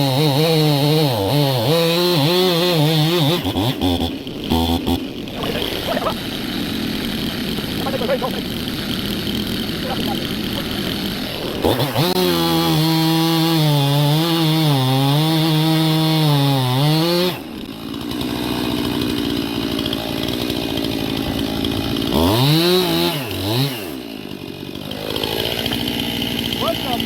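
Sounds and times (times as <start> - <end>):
chainsaw cutting through log: 0.0 - 27.0.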